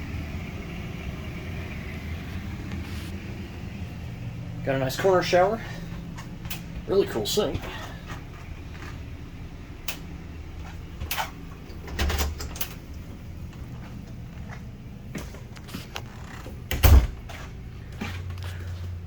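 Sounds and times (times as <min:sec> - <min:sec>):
door clicks and knocks: 0:11.0 - 0:12.7, 0:16.7 - 0:17.2
door thump: 0:16.7 - 0:17.2.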